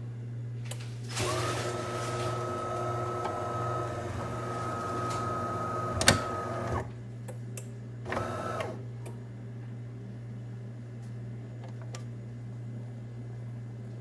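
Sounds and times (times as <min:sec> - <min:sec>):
coffee machine humming and whining: 0:00.7 - 0:07.2, 0:07.9 - 0:09.7.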